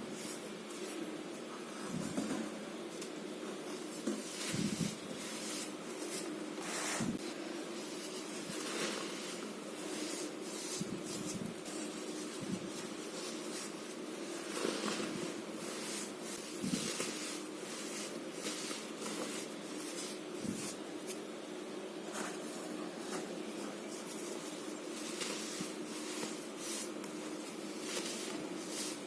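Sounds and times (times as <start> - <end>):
powder mixture crunching and squeaking: 7.8 - 20.8.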